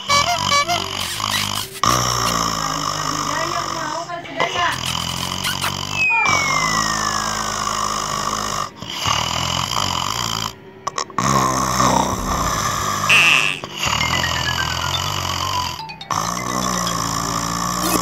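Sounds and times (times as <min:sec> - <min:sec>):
loud snoring: 0:00.0 - 0:18.0
thin whistling tone sliding down: 0:06.0 - 0:07.5.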